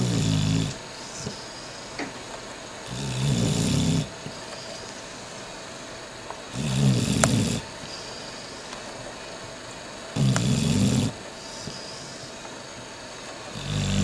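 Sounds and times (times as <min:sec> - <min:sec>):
dog snoring: 0:00.0 - 0:02.1, 0:02.8 - 0:05.5, 0:06.5 - 0:08.7, 0:10.1 - 0:14.0.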